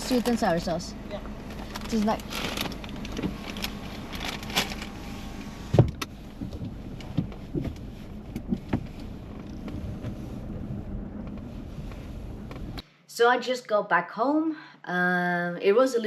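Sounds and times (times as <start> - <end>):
car cabin low rumble: 0.0 - 12.8
knocks and thumps: 5.7 - 10.2.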